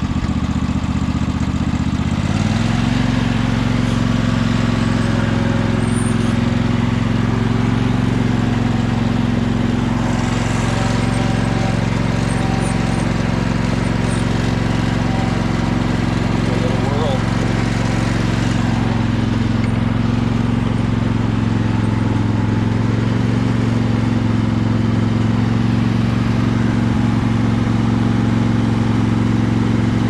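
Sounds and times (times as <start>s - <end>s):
lawn tractor engine running: 0.0s - 30.0s.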